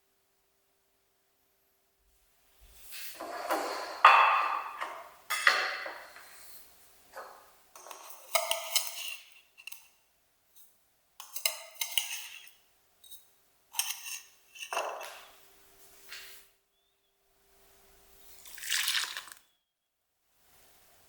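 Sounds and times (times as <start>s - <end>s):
utensils and dishes clinking: 7.8s - 9.9s, 11.2s - 15.3s.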